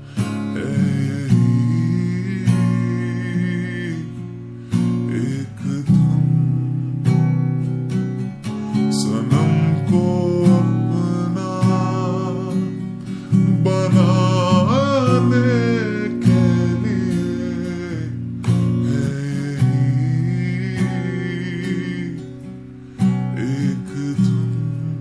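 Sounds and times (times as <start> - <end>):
plucked guitar notes: 0.0 - 25.0.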